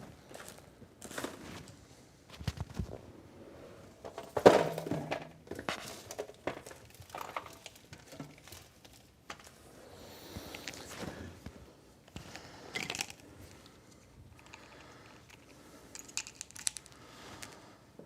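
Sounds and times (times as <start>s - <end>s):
metal parts clicking and knocking: 12.7s - 13.2s, 14.4s - 17.5s.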